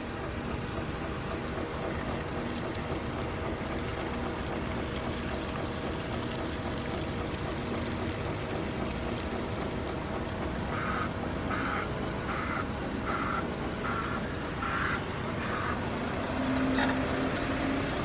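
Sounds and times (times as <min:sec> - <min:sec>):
vehicle engine humming: 0:00.0 - 0:18.0
road noise: 0:10.3 - 0:18.0.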